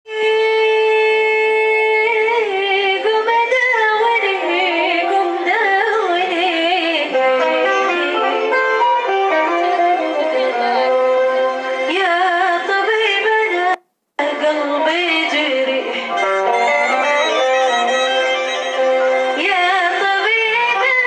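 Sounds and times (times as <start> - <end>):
woman singing: 0.1 - 8.6, 9.4 - 11.0, 11.9 - 16.6, 19.3 - 21.0.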